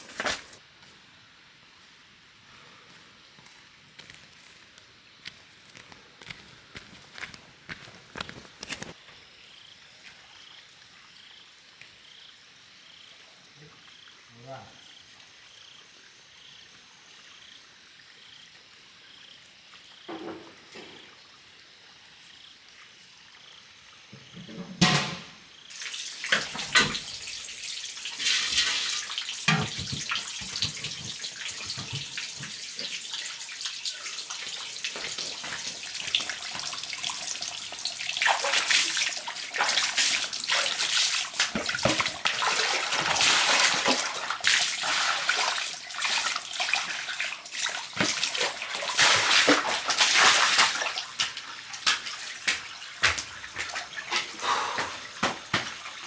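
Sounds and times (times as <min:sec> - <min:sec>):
water pouring and splashing: 0:25.7 - 0:56.0.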